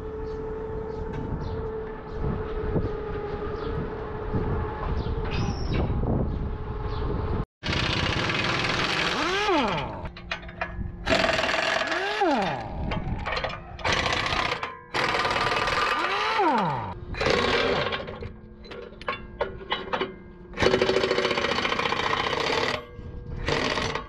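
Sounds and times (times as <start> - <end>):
power tool spinning up and down: 7.6 - 10.2, 11.1 - 13.0, 13.8 - 18.3
workshop machinery noise: 7.6 - 24.0.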